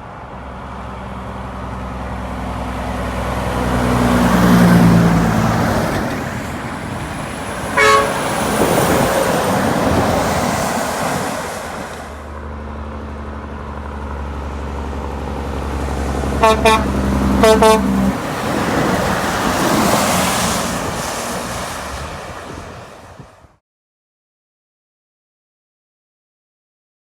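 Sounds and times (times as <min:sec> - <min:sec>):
heavy vehicle passing: 0:00.0 - 0:23.6
short horn toot: 0:07.8 - 0:08.3, 0:16.4 - 0:18.1
low steady engine rumble: 0:12.0 - 0:19.1.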